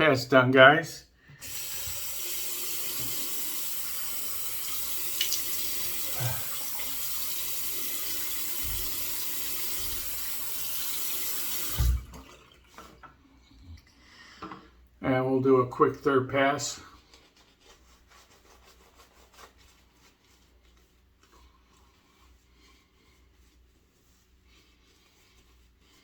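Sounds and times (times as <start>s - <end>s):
tap running into sink: 1.5s - 3.6s, 8.1s - 13.1s
faint handling sounds: 16.7s - 26.0s.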